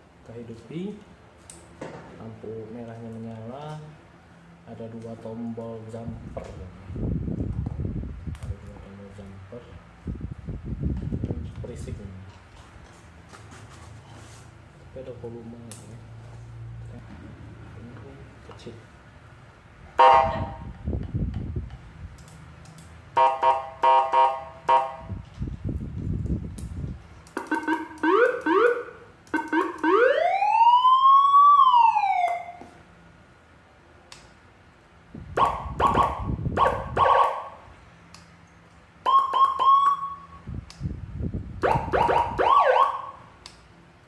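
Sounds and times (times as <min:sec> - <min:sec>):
electronic siren tones: 0:20.0 - 0:20.6, 0:23.2 - 0:25.1, 0:27.4 - 0:32.7, 0:35.4 - 0:37.6, 0:39.0 - 0:40.4, 0:41.6 - 0:43.2.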